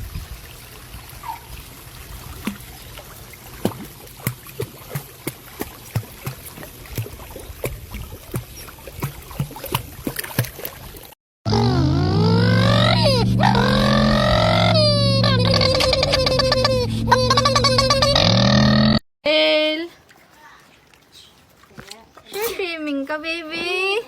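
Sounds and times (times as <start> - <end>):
puppy splashing in water: 0.0 - 11.2, 19.9 - 24.0.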